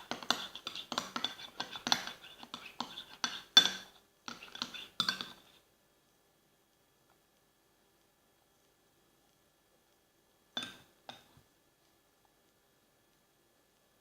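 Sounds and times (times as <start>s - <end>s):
spoon clinking against cup: 0.0s - 5.4s
spoon stirring thick slime: 0.0s - 5.6s.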